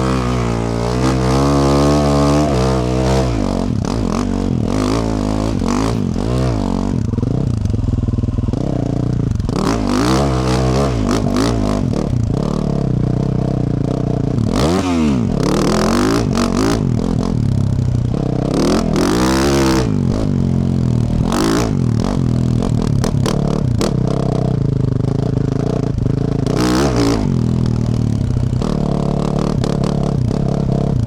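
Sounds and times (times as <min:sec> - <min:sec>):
dirt bike engine revving: 0:00.0 - 0:12.7, 0:14.3 - 0:24.2, 0:26.4 - 0:31.0.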